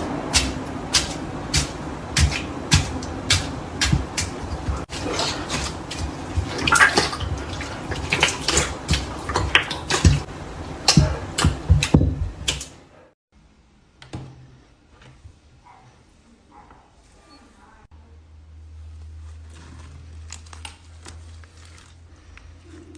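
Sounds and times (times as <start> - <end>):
slime squelching: 0.0 - 12.7, 19.2 - 22.9.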